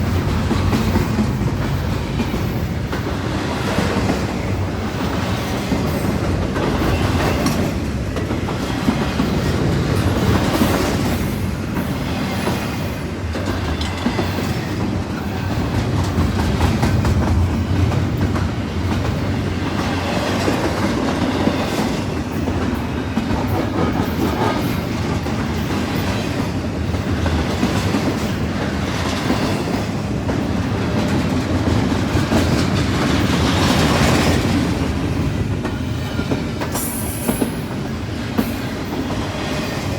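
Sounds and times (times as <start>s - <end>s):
freight train rumbling past: 0.0s - 39.9s.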